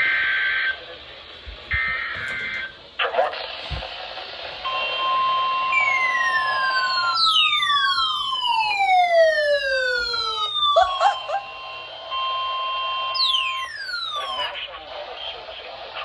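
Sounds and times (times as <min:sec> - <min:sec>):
siren-like tones sweeping downward: 0:04.8 - 0:11.7, 0:13.0 - 0:14.5
steady high alert tone: 0:05.8 - 0:11.7, 0:13.2 - 0:14.5.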